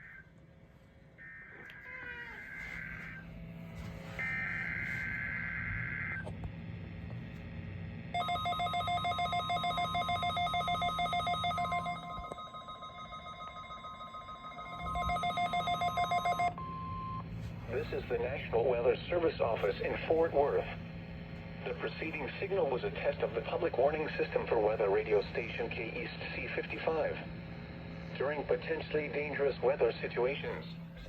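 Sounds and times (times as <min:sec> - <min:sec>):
steady warning alarm tone: 0:02.2 - 0:06.4, 0:08.0 - 0:31.0
warbling data bursts: 0:08.2 - 0:16.6
fast pulsing electronic beeping: 0:08.2 - 0:18.5.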